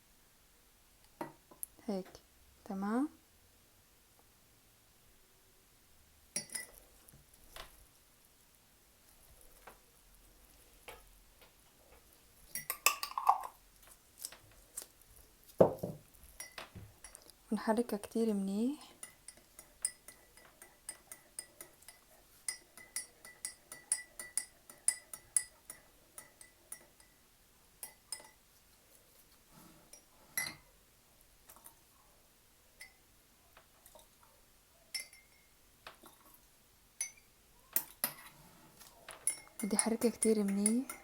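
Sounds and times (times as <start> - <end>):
spoon clinking against cup: 6.4 - 6.8, 12.5 - 13.6, 16.4 - 17.3, 19.0 - 27.2, 27.8 - 28.4, 29.9 - 30.7, 32.8 - 33.0, 34.9 - 35.5, 37.0 - 38.3, 39.2 - 41.0.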